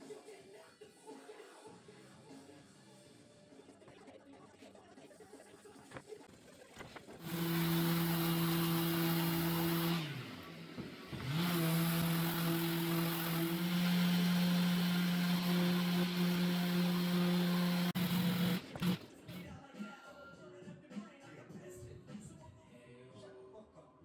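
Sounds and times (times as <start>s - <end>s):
table saw motor running: 7.2s - 19.5s.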